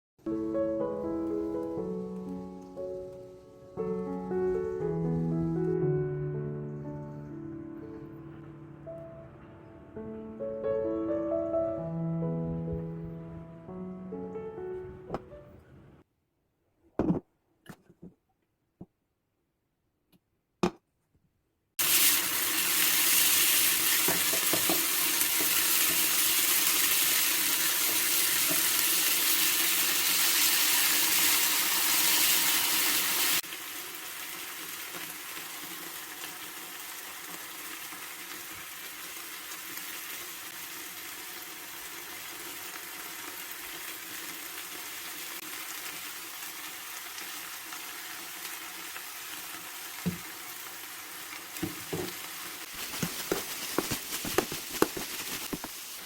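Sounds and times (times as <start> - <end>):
tap running water: 21.8 - 33.5, 50.0 - 50.4, 51.3 - 56.0
food sizzling in a pan: 21.8 - 56.0.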